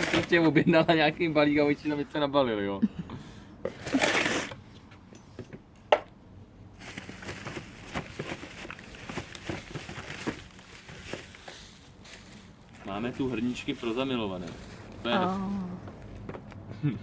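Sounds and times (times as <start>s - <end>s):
packaging rustling: 0.0s - 0.4s, 6.8s - 15.1s
packaging crinkling: 6.8s - 15.1s.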